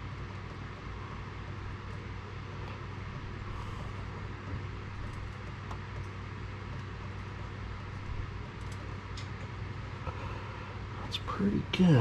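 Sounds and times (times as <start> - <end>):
low hum: 0.0 - 12.0
faint clicks and taps: 4.4 - 9.6.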